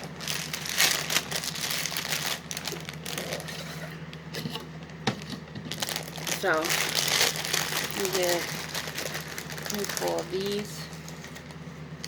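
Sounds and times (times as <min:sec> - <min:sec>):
plastic bag crinkling: 0:00.0 - 0:03.7, 0:05.7 - 0:11.7.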